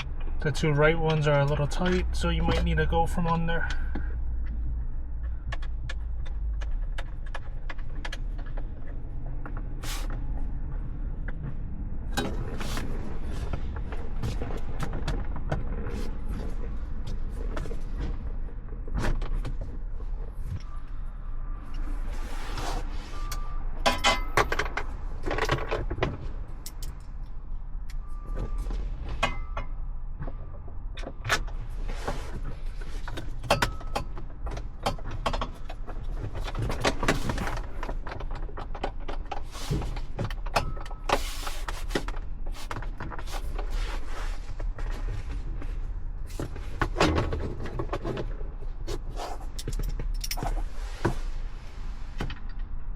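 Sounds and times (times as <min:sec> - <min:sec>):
tools clicking and knocking on trim: 0:33.1 - 0:41.2.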